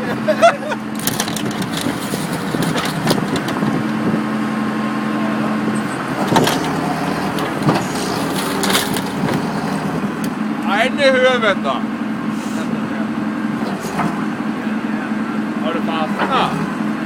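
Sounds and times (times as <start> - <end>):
excavator diesel engine running: 0.0 - 17.0
car body crunching: 0.8 - 4.1, 5.8 - 10.4, 13.6 - 14.4, 16.1 - 17.0.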